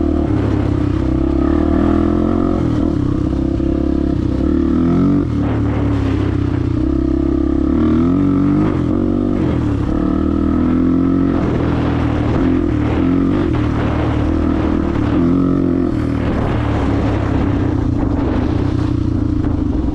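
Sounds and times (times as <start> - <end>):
dirt bike engine revving: 0.0 - 19.9.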